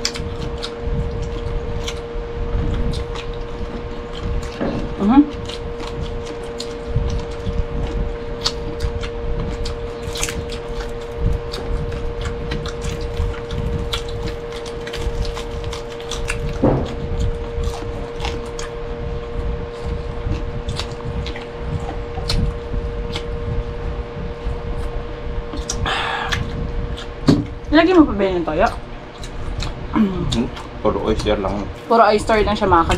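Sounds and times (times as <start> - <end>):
chewing and mouth sounds: 0.0 - 32.9
steady hum: 0.0 - 32.9.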